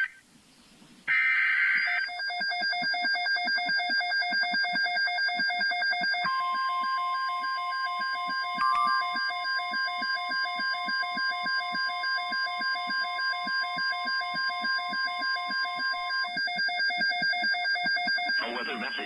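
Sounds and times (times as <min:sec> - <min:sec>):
steady warning alarm tone: 0:01.6 - 0:19.0.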